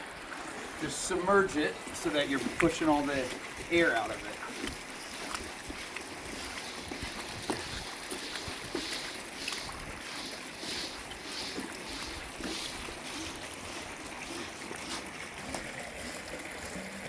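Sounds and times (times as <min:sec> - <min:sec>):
water sloshing and gurgling: 0:00.0 - 0:17.0
wind on microphone: 0:06.4 - 0:09.0.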